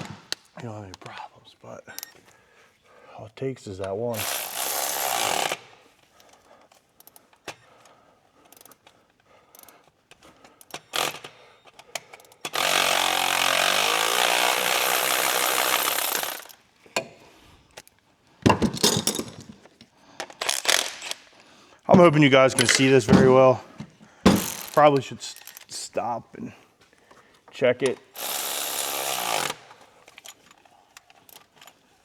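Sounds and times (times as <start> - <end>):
handheld power tool running: 4.2 - 5.7, 10.8 - 11.4, 12.4 - 16.6, 20.4 - 21.2, 24.3 - 25.7, 28.1 - 29.8.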